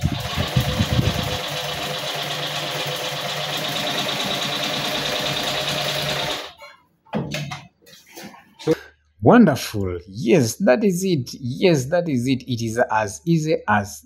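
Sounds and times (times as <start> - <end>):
sewing machine running: 0.0 - 6.6.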